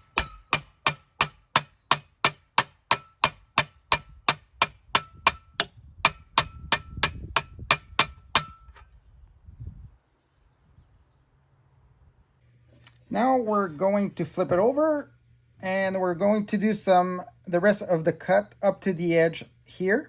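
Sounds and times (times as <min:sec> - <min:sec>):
hammer ringing on metal plate: 0:00.0 - 0:08.8.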